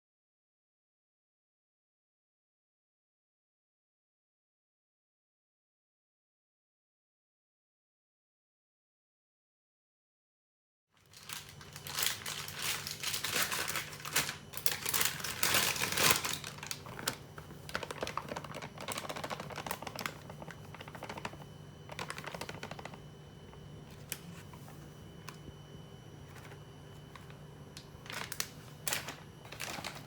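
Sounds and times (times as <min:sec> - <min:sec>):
crackling rustling clicks: 0:11.0 - 0:23.0, 0:26.3 - 0:30.0
steady low hum: 0:11.1 - 0:30.0.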